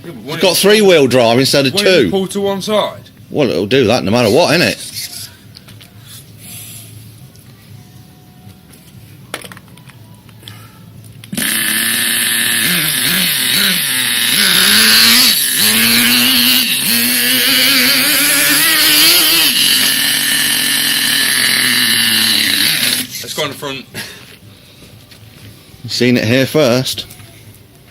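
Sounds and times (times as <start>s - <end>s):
toy car motor whining: 11.3s - 23.4s.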